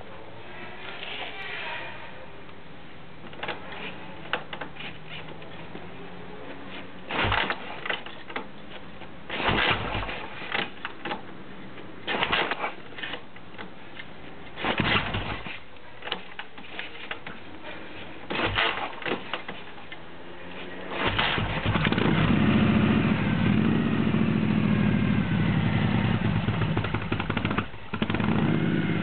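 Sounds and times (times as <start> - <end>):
motorcycle engine running: 21.1 - 29.0.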